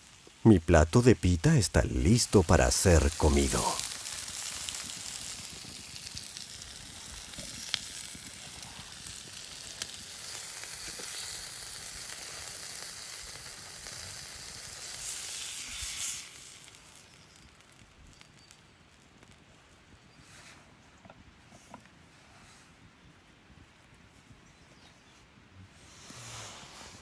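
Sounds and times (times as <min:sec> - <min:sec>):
meat sizzling on hot stone: 0:00.0 - 0:19.4.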